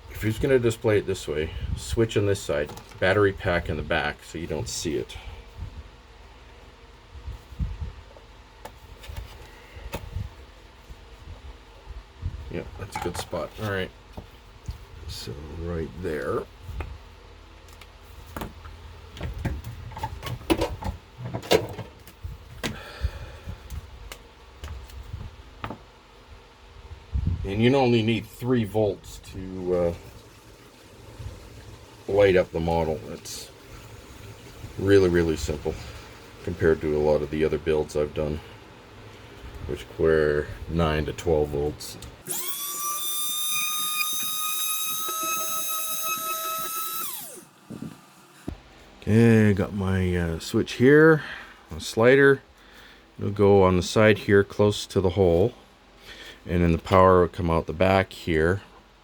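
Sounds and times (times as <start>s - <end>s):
electric motor whining: 42.2s - 48.5s.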